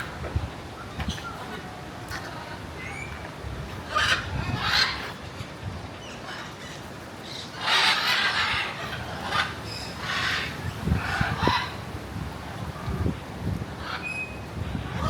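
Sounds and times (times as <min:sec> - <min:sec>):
parrots squawking: 0:03.8 - 0:05.2, 0:06.0 - 0:11.8, 0:13.8 - 0:14.1.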